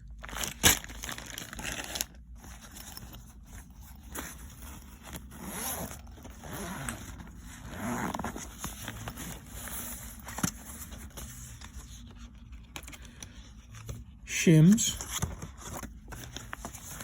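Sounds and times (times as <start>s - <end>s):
tool bag rustling: 0.3s - 11.8s.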